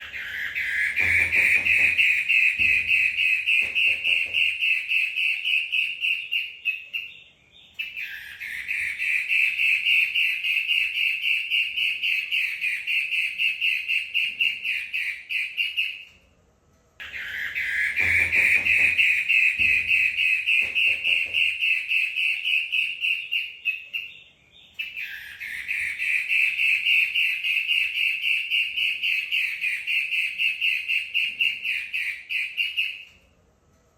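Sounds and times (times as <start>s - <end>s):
shrike chattering trills: 0.0s - 6.4s, 17.0s - 23.4s.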